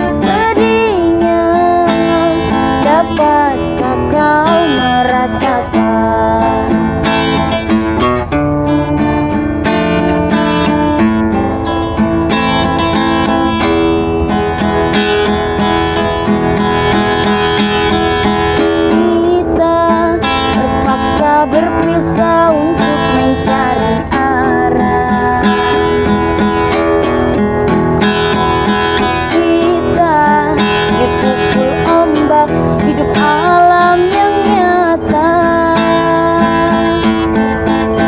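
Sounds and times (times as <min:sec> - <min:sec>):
acoustic guitar strumming: 0:00.0 - 0:38.0.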